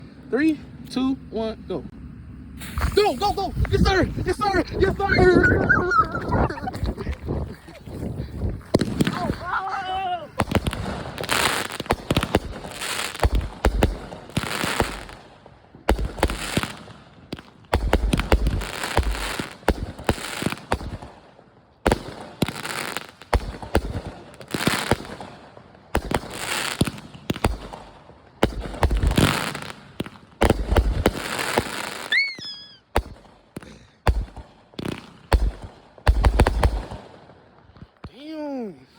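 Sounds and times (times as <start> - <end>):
sharp firework cracks: 2.6 - 3.4, 8.6 - 37.9
firework shots thumping and crackling: 2.6 - 5.0, 6.1 - 38.1.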